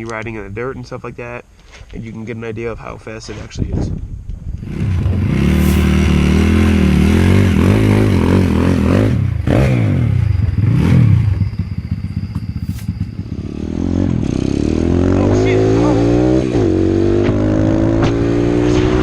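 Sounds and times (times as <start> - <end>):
pit bike engine revving: 4.6 - 19.0.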